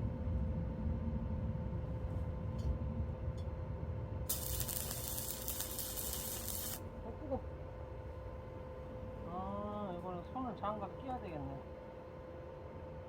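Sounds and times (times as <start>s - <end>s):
steady hum: 0.0s - 13.0s
arc welding crackling sizzle: 4.3s - 6.9s.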